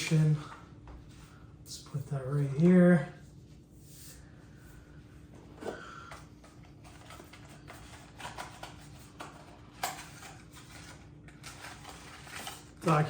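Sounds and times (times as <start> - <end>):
paper and packaging rustling: 6.4 - 13.0.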